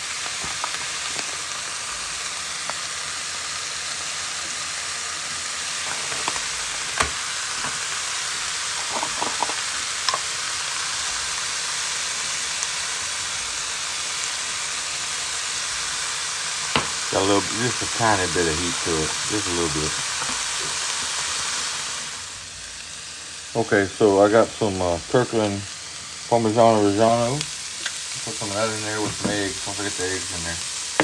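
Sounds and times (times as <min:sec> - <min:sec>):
meat sizzling in a pan: 0:00.0 - 0:31.0.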